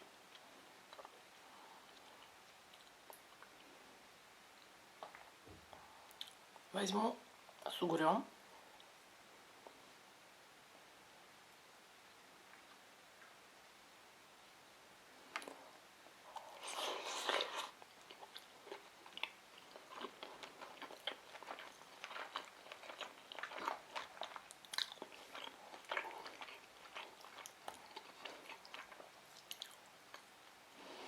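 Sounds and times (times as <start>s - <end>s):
chewing with wet mouth smacks: 16.3s - 30.3s.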